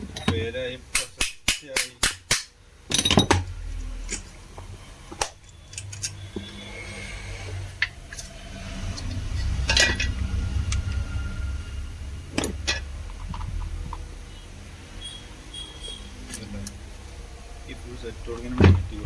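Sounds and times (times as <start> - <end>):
metal parts clinking: 2.9 - 3.4, 5.4 - 6.3
low handling rumble: 7.4 - 14.8, 16.4 - 19.0.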